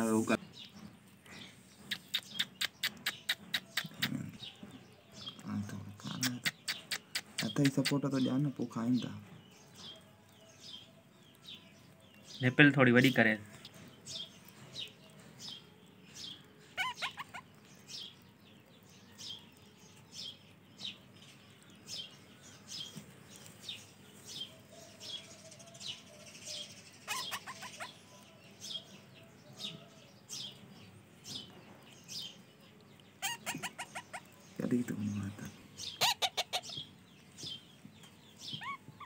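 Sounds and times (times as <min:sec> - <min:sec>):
parakeet chicks begging calls: 0:00.0 - 0:39.0
rapid chattering: 0:01.6 - 0:04.5, 0:05.2 - 0:08.1, 0:33.1 - 0:36.8.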